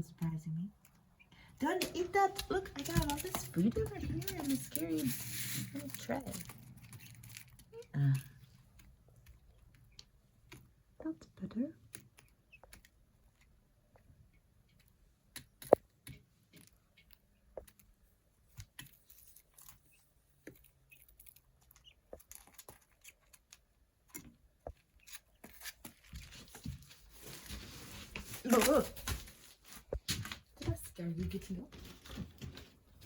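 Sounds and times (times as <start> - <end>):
rustling: 1.6 - 10.7, 24.3 - 33.0.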